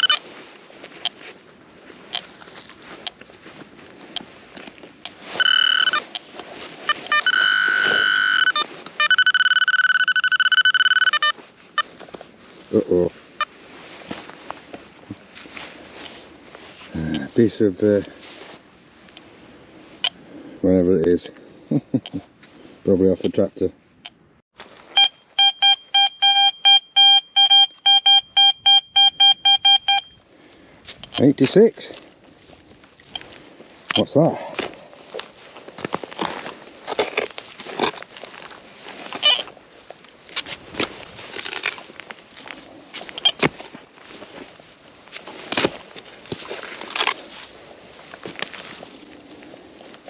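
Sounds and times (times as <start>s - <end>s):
metal detector beeping: 0.0s - 0.2s, 5.3s - 11.9s, 24.9s - 30.2s, 31.0s - 31.3s, 33.9s - 34.1s, 39.1s - 39.5s, 43.1s - 43.5s.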